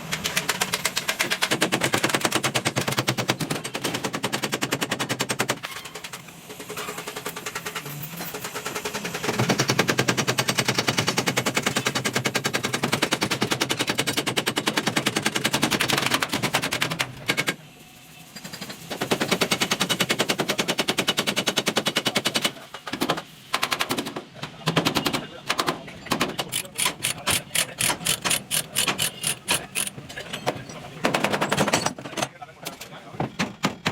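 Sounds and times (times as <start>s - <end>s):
air hammer rattling on metal: 26.5s - 30.1s.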